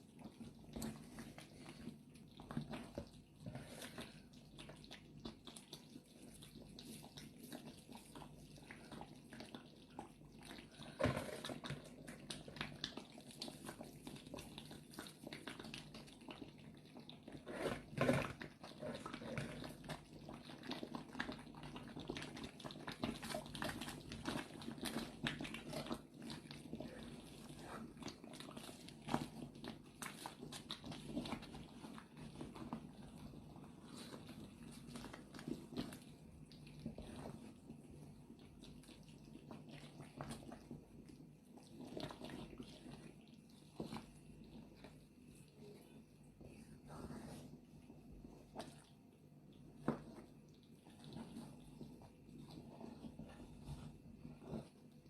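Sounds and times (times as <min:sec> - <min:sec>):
soup bubbling in a pot: 0:00.0 - 0:55.0.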